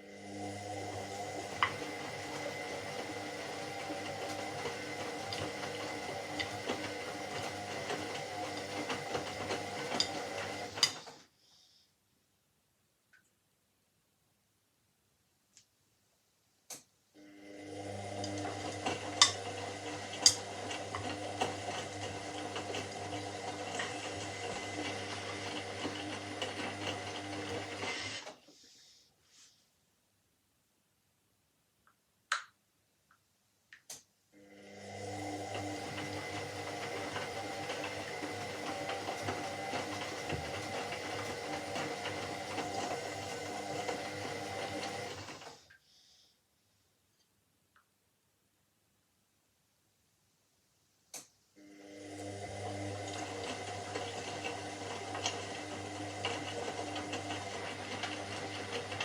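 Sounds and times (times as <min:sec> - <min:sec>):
washing machine motor hum: 0:00.0 - 0:11.2, 0:17.2 - 0:28.4, 0:34.4 - 0:45.7, 0:51.6 - 0:59.0.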